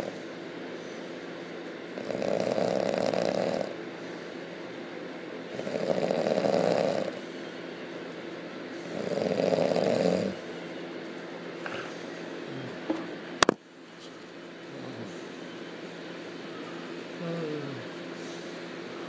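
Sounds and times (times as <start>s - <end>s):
person snoring loudly: 2.0s - 3.7s, 5.6s - 7.2s, 8.9s - 10.4s.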